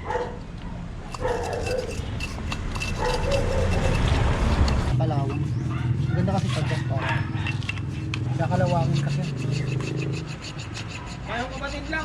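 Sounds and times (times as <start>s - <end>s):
dog barking: 0.0s - 0.4s, 1.2s - 1.9s, 5.7s - 7.6s.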